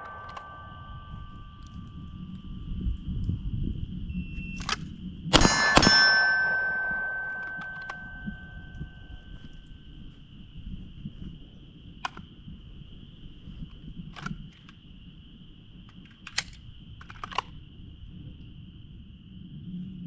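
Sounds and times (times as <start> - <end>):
gunshots with metallic ring: 0.0 - 2.0, 5.3 - 9.4
insects droning: 0.0 - 20.0.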